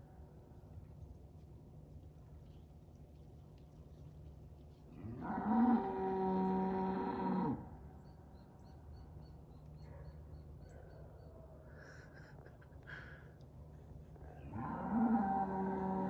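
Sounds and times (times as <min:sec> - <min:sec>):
long low animal call: 0:14.2 - 0:16.0.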